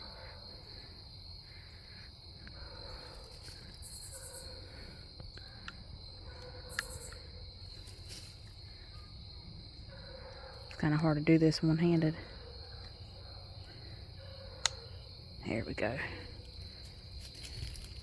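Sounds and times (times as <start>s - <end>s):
high-pitched insect chorus: 0.0s - 18.0s
light clicks and rustles: 16.4s - 18.0s.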